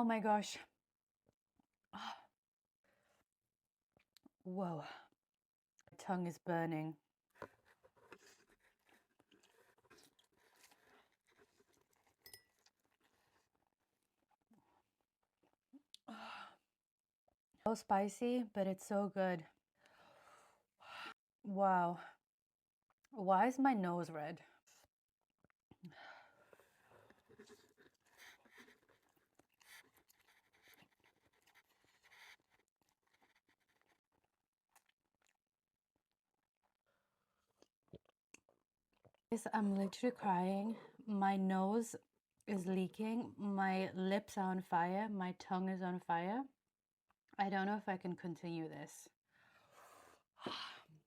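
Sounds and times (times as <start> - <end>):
faint chewing and mouth sounds: 7.3 - 16.1, 24.7 - 35.4, 36.4 - 39.3
light clink: 12.2 - 12.5
breathy puffs and mouth sounds: 25.7 - 34.3.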